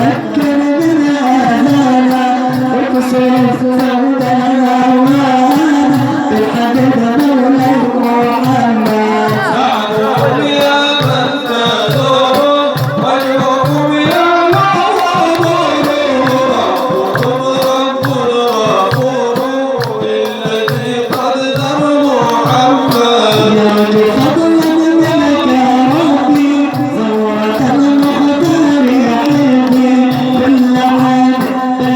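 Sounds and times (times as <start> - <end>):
hand drum beat: 0.0 - 31.9
wavering melodic voices: 0.7 - 19.9.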